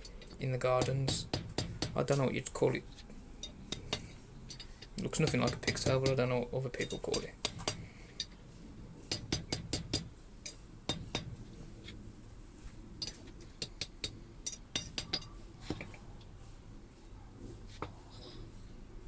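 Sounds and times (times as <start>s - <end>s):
hammer striking iron on anvil: 0.8s - 2.1s, 3.4s - 8.3s, 9.1s - 11.3s, 13.6s - 15.4s.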